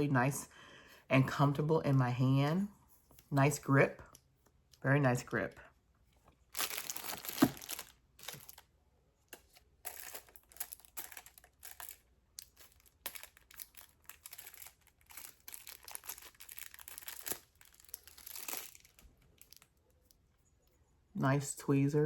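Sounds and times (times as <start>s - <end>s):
plastic packaging crinkling: 6.4s - 8.7s, 9.3s - 19.8s.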